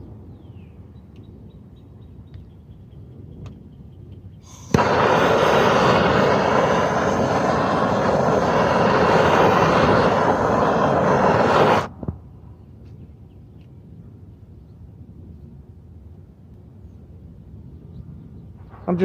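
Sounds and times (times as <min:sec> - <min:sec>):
gas torch hissing: 0:04.4 - 0:11.9.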